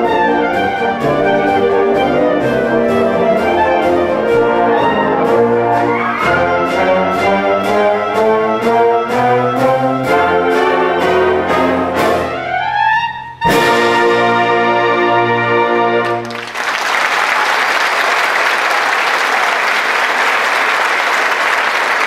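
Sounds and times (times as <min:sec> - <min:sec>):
concert band with brass playing: 0:00.0 - 0:16.6
audience applause: 0:16.0 - 0:22.0.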